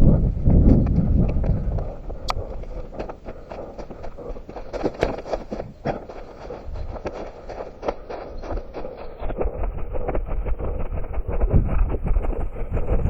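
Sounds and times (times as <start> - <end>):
running footsteps on rough ground: 0.0 - 13.0.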